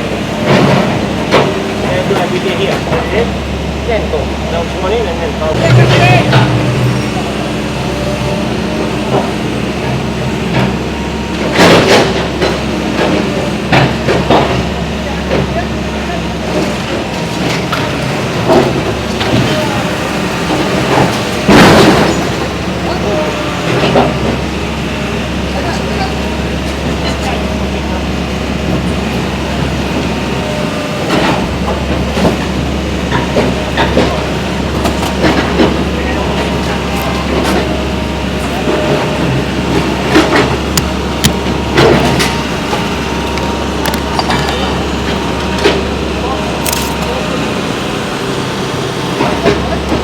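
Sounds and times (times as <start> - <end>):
low engine drone: 0.0 - 50.0
train rumbling past: 0.0 - 50.0
wheels clattering on track: 0.0 - 50.0
demolition bangs and crashes: 0.4 - 3.2, 11.4 - 15.6, 16.4 - 24.5.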